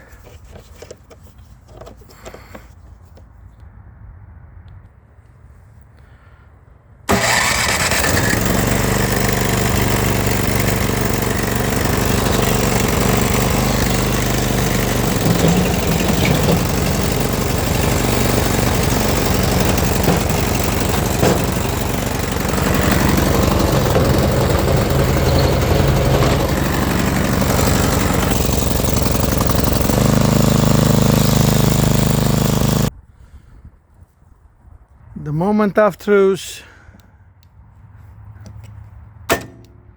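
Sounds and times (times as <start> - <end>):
snow blower engine running: 7.1 - 32.9.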